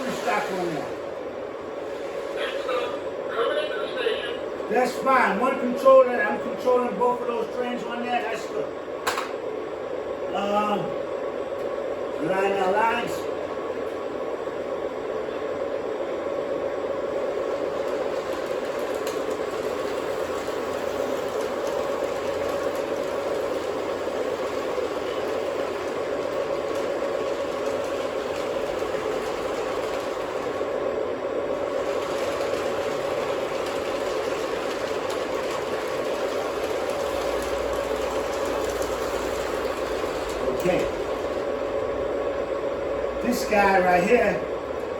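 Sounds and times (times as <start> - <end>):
model train motors humming: 16.8 - 42.0.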